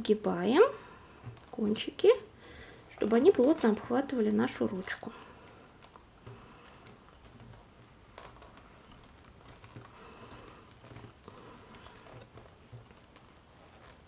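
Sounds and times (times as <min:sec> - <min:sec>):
damp newspaper crinkling: 0:02.9 - 0:14.0.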